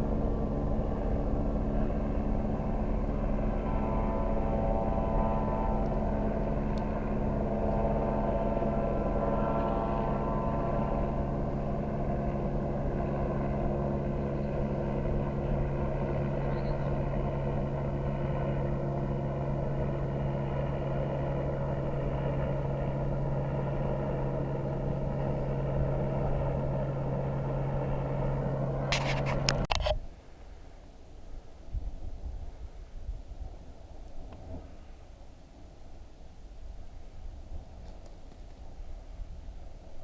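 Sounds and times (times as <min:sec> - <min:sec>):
motor running steadily: 0:00.0 - 0:30.0.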